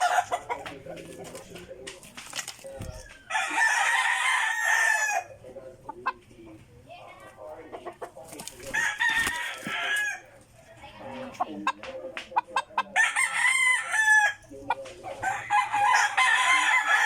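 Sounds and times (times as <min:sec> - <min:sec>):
roosters crowing: 0:00.0 - 0:01.5, 0:02.8 - 0:06.1, 0:08.2 - 0:11.8, 0:12.4 - 0:17.0
chicken clucking: 0:00.0 - 0:17.0.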